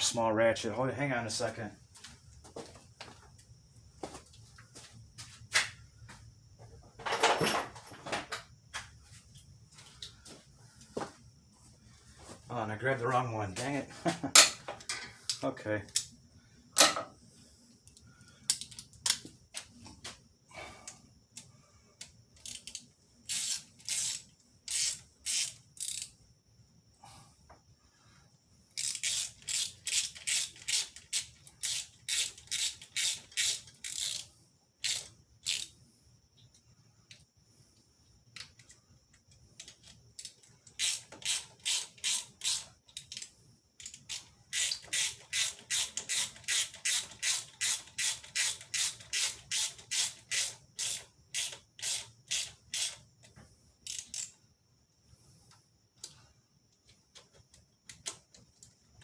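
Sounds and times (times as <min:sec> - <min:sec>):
hand ratchet clicking: 0:22.4 - 0:26.1, 0:28.8 - 0:35.7, 0:39.6 - 0:53.0, 0:53.8 - 0:54.4.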